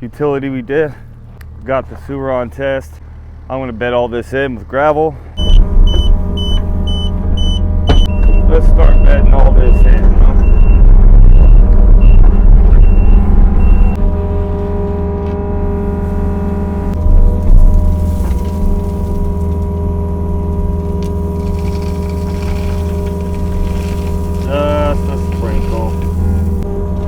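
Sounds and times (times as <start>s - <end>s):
excavator diesel engine rumbling: 0.0s - 27.0s
travel alarm beeping: 5.4s - 14.4s, 15.0s - 17.0s.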